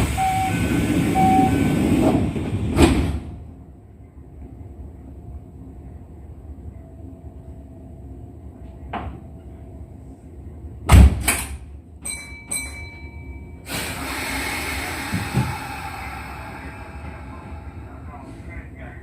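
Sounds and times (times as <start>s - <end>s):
train doors shutting with a thud: 0.0s - 3.5s, 8.7s - 9.5s, 10.8s - 17.6s
low hum of train car: 0.0s - 19.0s.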